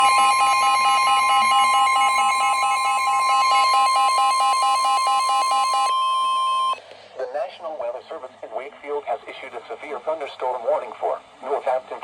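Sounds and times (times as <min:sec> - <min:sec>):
steady alarm tone: 0:00.0 - 0:06.8
warbling two-pitch alarm: 0:00.0 - 0:06.8.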